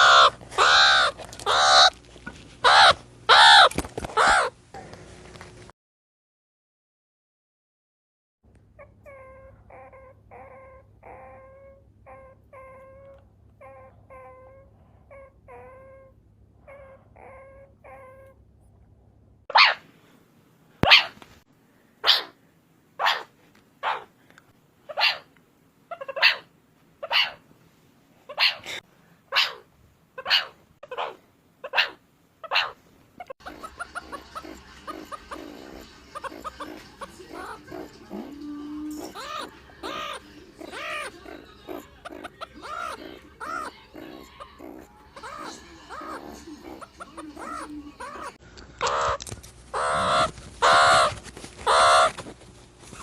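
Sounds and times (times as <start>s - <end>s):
meerkat calling: 0.0s - 2.0s, 2.6s - 4.6s, 8.8s - 18.4s, 19.5s - 19.8s, 20.8s - 21.2s, 22.0s - 22.4s, 23.0s - 24.1s, 24.9s - 25.3s, 25.9s - 27.4s, 28.3s - 52.2s.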